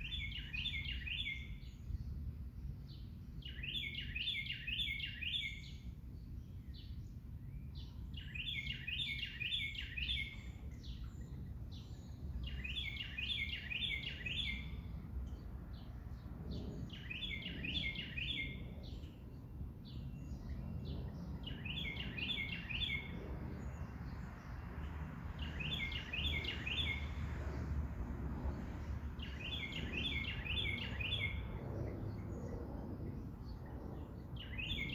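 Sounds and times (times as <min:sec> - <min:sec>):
songbird singing: 0:00.0 - 0:34.9
low background rumble: 0:14.7 - 0:34.9.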